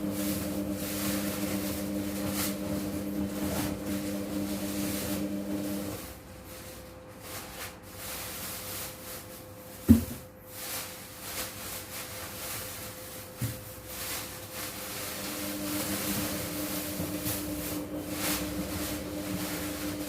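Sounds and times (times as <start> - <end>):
low machine hum: 12.4 - 20.0.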